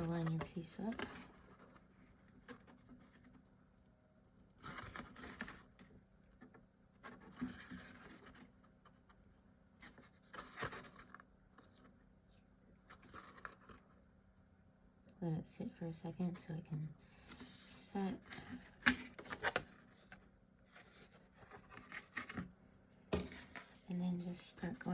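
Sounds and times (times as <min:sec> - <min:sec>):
paper scraping and rustling: 0:04.6 - 0:05.9, 0:07.0 - 0:08.5, 0:09.8 - 0:11.9, 0:12.9 - 0:13.8, 0:17.3 - 0:22.5, 0:23.2 - 0:24.9.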